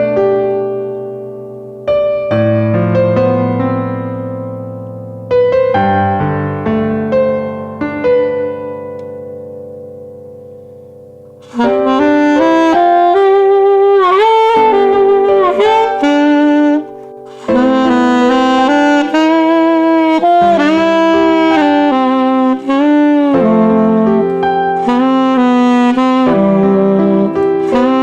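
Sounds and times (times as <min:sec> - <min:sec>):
piano chord: 0:00.0 - 0:28.0
alto saxophone melody: 0:10.7 - 0:28.0.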